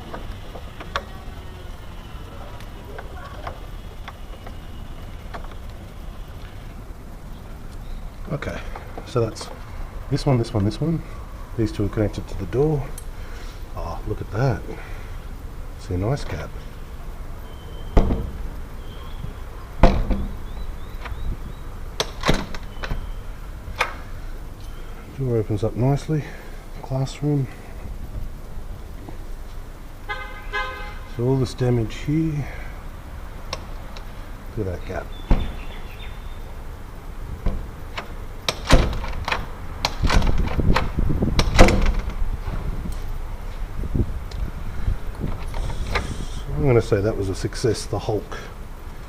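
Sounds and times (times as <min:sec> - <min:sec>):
door latch clicking and knocking: 0:00.0 - 0:01.2, 0:18.0 - 0:18.5, 0:19.8 - 0:21.2, 0:22.0 - 0:23.0, 0:23.7 - 0:24.0, 0:35.2 - 0:35.9, 0:37.4 - 0:42.3.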